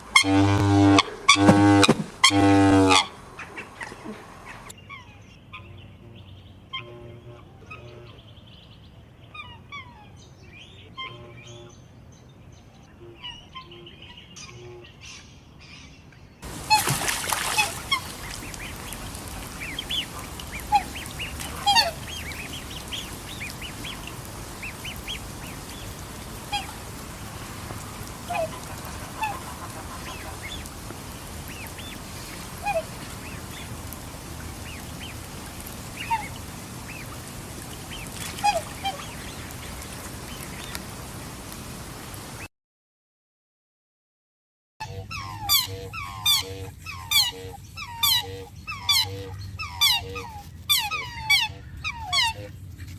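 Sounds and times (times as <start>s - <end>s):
swans calling: 0.0s - 5.7s, 16.4s - 41.6s, 44.8s - 52.9s.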